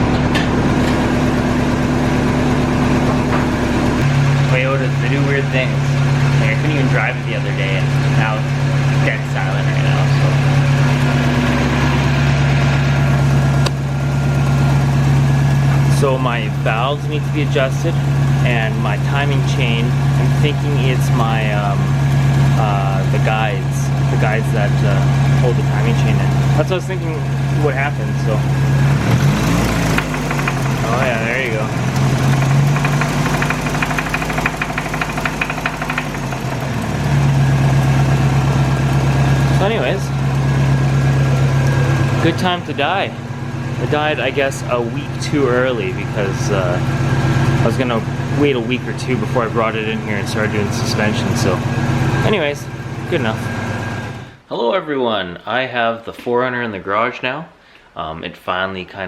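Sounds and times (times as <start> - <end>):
car engine idling: 0.0 - 54.4
fast ticking engine rattle: 19.1 - 54.3.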